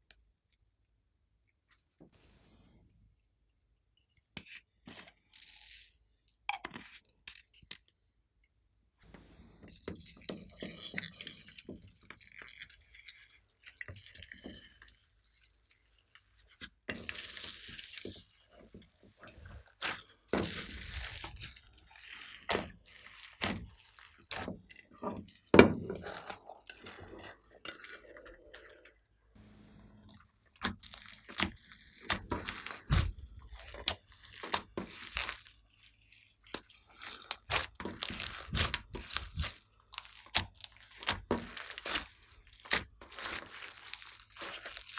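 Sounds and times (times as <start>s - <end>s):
slime squishing and crackling: 19.2s - 28.8s, 30.2s - 44.9s.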